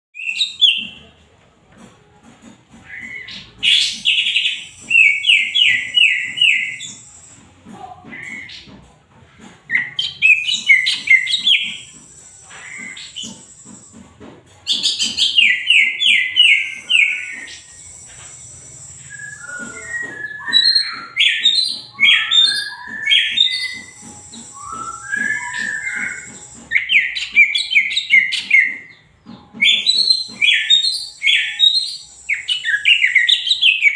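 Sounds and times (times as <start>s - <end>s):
bird singing chattering high notes: 2.9s - 7.5s, 14.7s - 33.9s.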